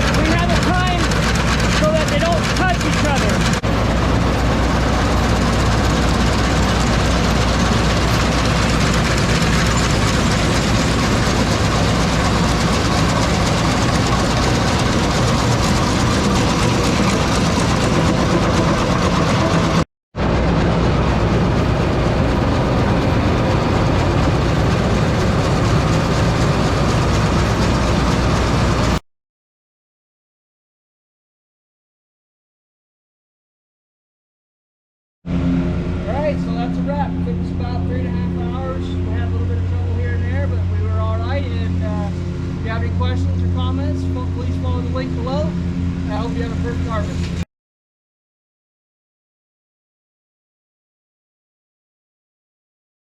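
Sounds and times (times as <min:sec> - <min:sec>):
combine harvester running: 0:00.0 - 0:29.0, 0:35.3 - 0:47.4.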